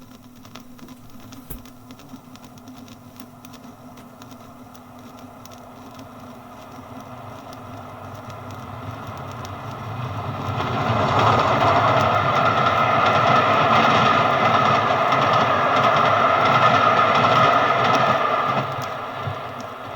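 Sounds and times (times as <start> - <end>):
train wheels on rail: 6.2 - 19.9.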